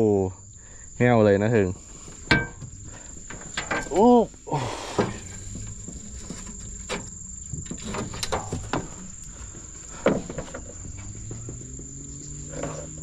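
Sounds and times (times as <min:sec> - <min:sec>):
insects buzzing: 0:00.0 - 0:13.0
sharp knocks: 0:02.3 - 0:04.1, 0:06.9 - 0:09.1.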